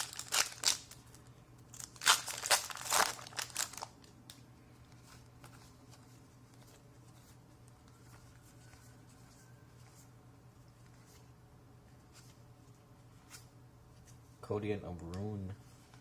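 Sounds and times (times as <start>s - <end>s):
foil wrapper crinkling and tearing: 0.0s - 4.1s.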